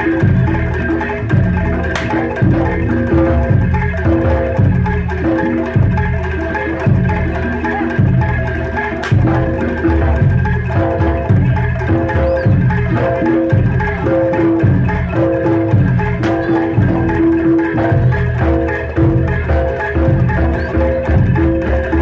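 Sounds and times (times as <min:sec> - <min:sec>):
gong-chime percussion: 0:00.0 - 0:22.0
steady drum beat: 0:00.0 - 0:22.0.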